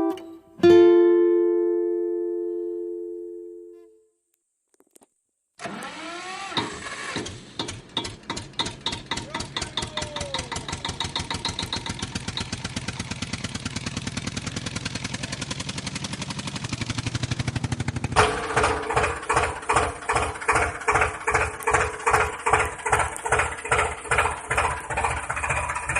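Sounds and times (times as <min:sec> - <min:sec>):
small engine starting and running: 0:05.6 - 0:25.9.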